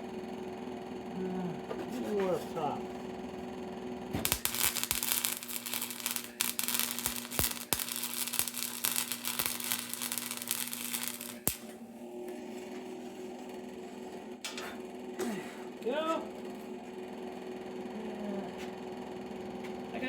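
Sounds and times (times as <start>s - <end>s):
steady electrical hum: 2.5s - 18.1s
welding arc crackling: 4.2s - 11.8s.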